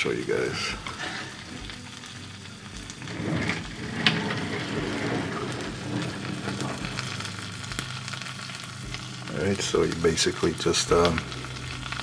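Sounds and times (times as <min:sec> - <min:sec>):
food sizzling and crackling: 0:00.0 - 0:12.0.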